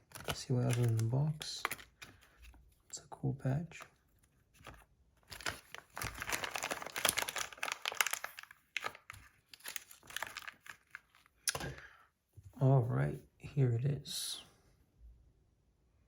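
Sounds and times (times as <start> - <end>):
packaging crinkling and tearing: 0.0 - 2.8, 3.7 - 11.8.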